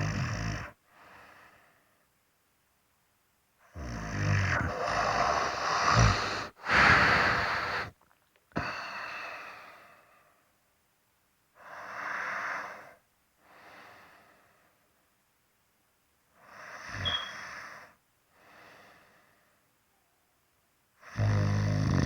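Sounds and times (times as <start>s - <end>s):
person snoring: 0.0s - 0.8s, 3.7s - 8.0s, 21.1s - 22.0s.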